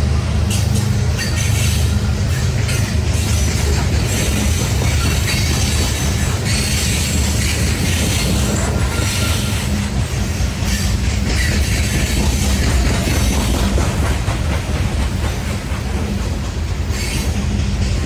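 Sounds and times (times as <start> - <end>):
train wheels rumbling on rails: 0.0 - 18.0
high wheel squeals: 4.8 - 10.0.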